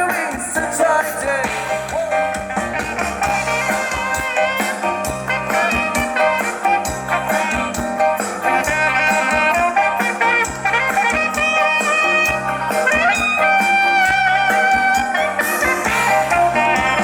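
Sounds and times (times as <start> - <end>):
band playing instrumental music: 0.0 - 17.0
steady drum beat: 0.0 - 17.0.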